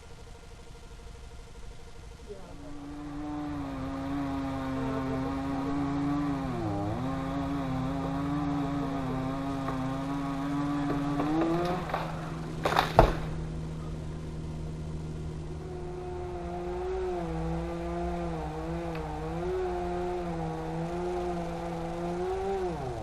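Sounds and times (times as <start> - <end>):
chainsaw revving: 2.3 - 13.8, 15.0 - 23.0
wood cracking: 7.0 - 13.5.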